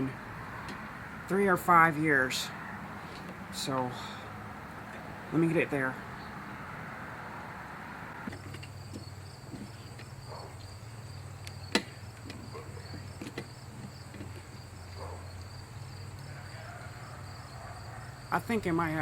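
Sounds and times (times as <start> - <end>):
insects chirping: 5.9 - 19.0.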